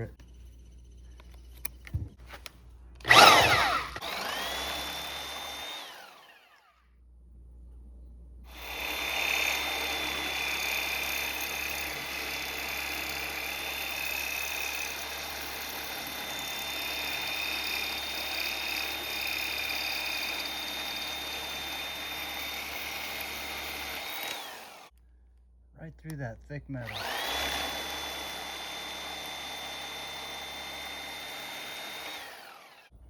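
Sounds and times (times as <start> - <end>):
reciprocating saw cutting metal: 3.0 - 6.7, 8.5 - 25.0, 26.8 - 33.0.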